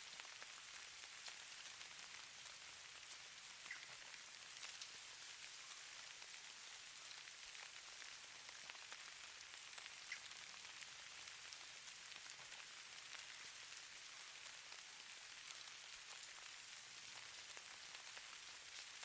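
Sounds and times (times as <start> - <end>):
snowflakes ticking hiss: 0.0 - 19.0.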